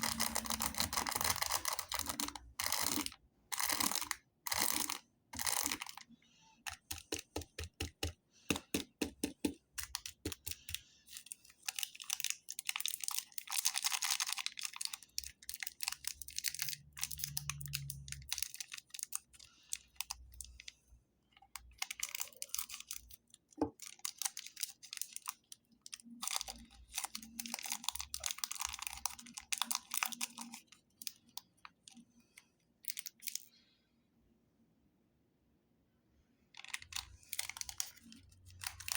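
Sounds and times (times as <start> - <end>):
plastic wrappers crinkling and tearing: 0.0 - 8.0, 8.6 - 32.0, 32.8 - 33.5, 36.6 - 38.9.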